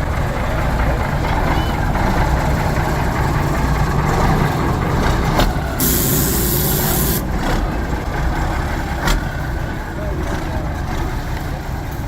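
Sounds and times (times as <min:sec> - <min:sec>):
diesel truck engine running: 0:00.0 - 0:12.0
air brakes hissing: 0:05.8 - 0:07.3.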